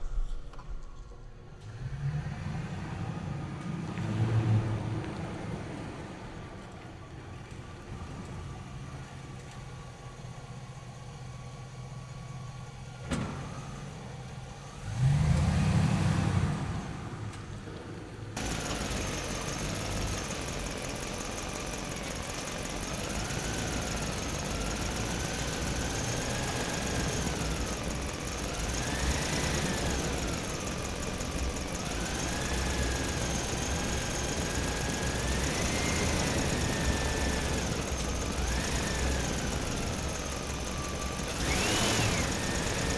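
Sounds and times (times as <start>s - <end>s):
loud low rumble: 0.0s - 2.0s
small electric motors whining: 18.4s - 42.9s.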